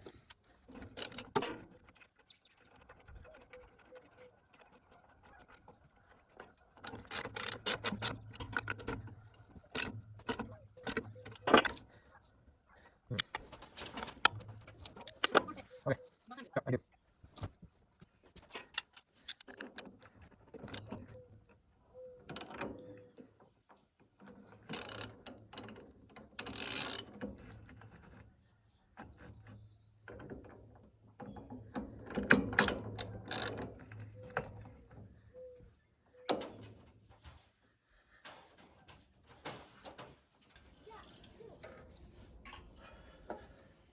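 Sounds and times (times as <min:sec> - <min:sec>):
ratchet clicks: 0:00.7 - 0:02.0, 0:06.8 - 0:11.8, 0:24.6 - 0:25.7, 0:26.3 - 0:27.6, 0:32.2 - 0:34.6.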